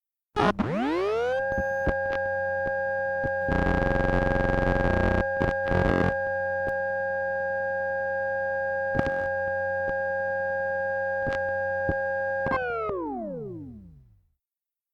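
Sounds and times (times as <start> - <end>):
high electrical whine: 3.4 - 6.2.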